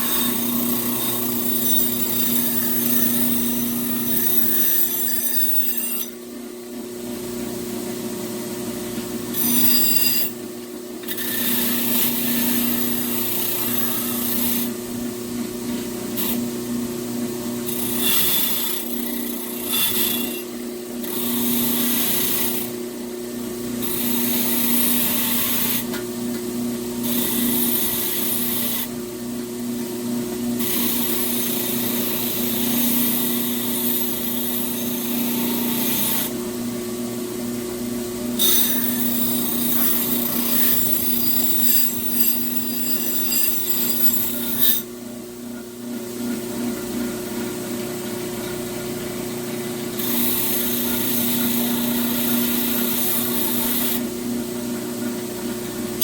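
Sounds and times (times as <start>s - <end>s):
metal being ground: 0.0s - 6.2s, 9.3s - 10.4s, 38.4s - 44.9s
power grinder running: 0.0s - 6.2s, 11.0s - 14.8s, 17.6s - 22.8s, 23.8s - 26.0s, 27.0s - 28.9s, 30.6s - 36.4s, 38.4s - 44.9s, 49.6s - 54.1s.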